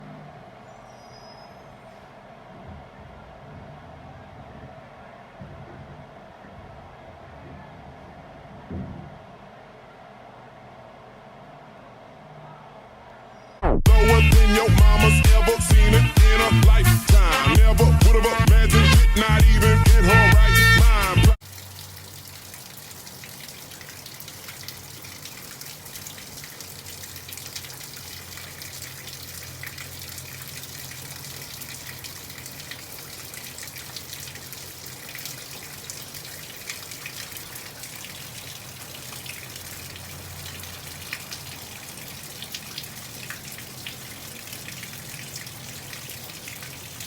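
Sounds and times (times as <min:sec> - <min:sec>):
light ticks of drips landing: 0:21.4 - 0:47.0.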